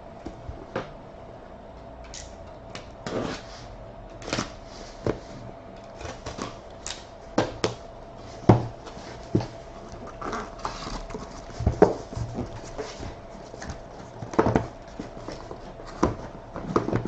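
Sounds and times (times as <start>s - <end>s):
faint steady hum: 0.0s - 17.0s
cardboard knocks and scrapes: 10.6s - 17.0s.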